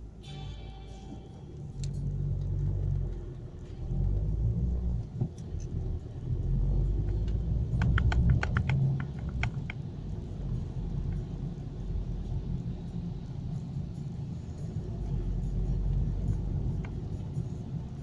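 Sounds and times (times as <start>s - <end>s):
car engine and road noise: 0.0s - 18.0s
small clicks: 6.8s - 10.2s.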